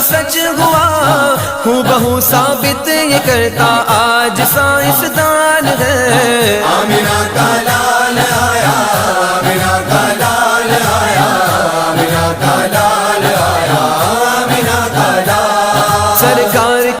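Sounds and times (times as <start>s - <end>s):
devotional chant singing: 0.0s - 17.0s
repeating low beat: 5.8s - 16.7s.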